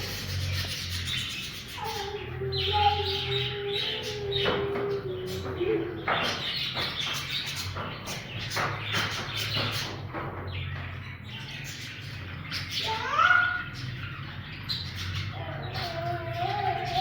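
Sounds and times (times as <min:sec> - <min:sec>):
budgies chirping and chattering: 0:00.0 - 0:17.0.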